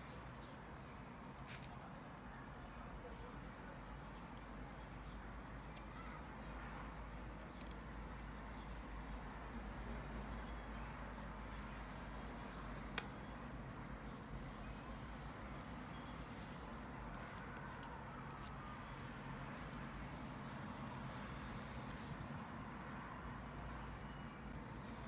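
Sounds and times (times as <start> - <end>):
small clicks of laptop parts: 1.3 - 2.6, 7.4 - 8.7, 11.5 - 13.3, 14.1 - 24.7.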